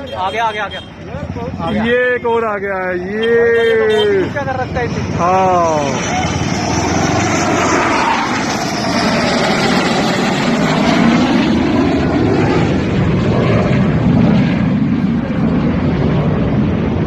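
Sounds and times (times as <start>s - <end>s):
fighter jet engines passing: 0.0s - 17.0s.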